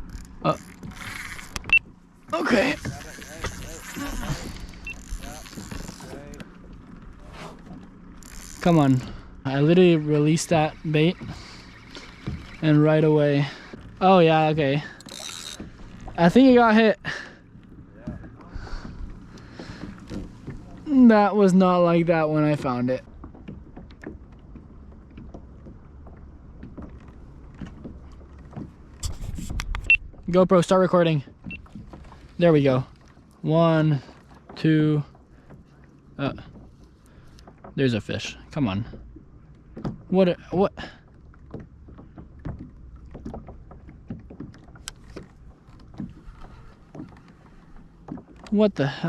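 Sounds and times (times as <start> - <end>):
low steady rumble: 0.0 - 49.0
water lapping against kayak: 0.0 - 49.0
light knocks and ticks: 23.0 - 30.4, 34.0 - 37.8, 38.8 - 40.1, 40.9 - 48.6.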